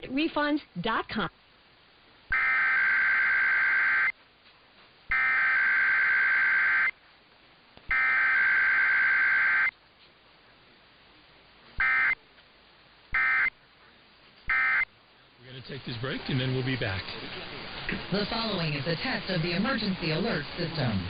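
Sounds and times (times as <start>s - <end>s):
raspy two-tone data bursts: 2.3s - 4.1s, 5.1s - 7.0s, 7.9s - 9.7s, 11.8s - 12.2s, 13.1s - 13.6s, 14.5s - 14.9s.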